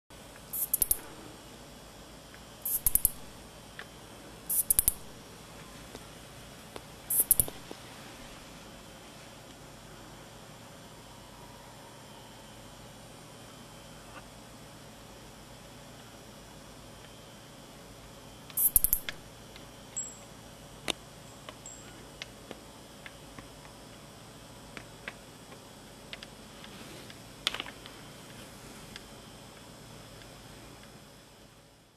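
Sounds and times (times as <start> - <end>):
katydid calling: 0.5 - 1.2, 2.6 - 3.4, 4.5 - 5.2, 7.1 - 7.6, 18.6 - 19.2.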